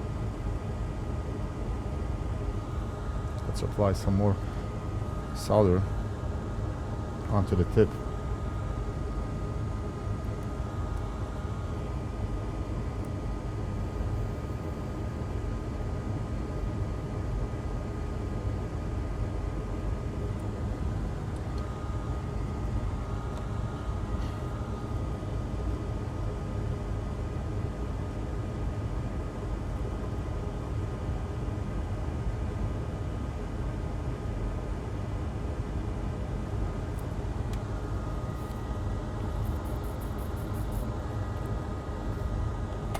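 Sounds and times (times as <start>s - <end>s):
low background hum: 0.0s - 42.9s
faint thin whine: 36.7s - 42.9s.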